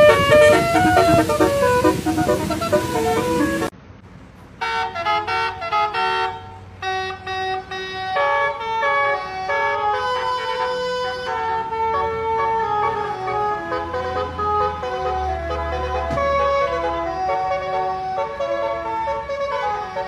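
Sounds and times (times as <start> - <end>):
loud noisy burst: 0.0 - 3.7
multi-tone bus horn melody: 0.0 - 3.7, 4.6 - 20.0.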